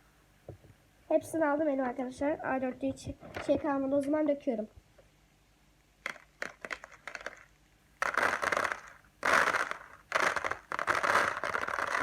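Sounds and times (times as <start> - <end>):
rice grains pattering on paper: 8.0 - 12.0.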